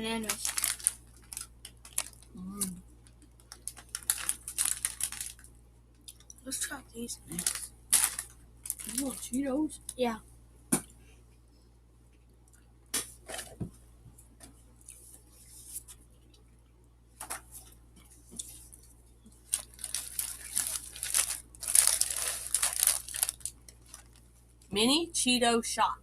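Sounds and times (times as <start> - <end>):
plastic snack bag crinkling: 0.0 - 6.4, 7.2 - 10.0, 18.7 - 24.3.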